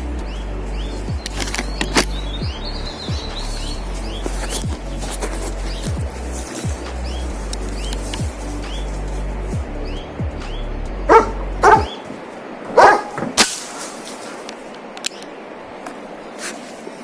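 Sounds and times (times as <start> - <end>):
background music: 0.0 - 13.1
dog barking: 11.1 - 12.0, 12.7 - 13.2
sharp crack: 12.8 - 15.3.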